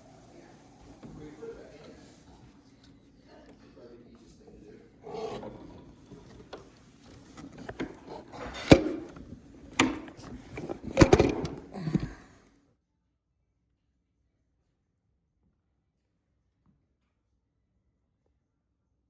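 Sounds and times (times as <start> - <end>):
objects knocking and clunking: 5.0 - 12.4.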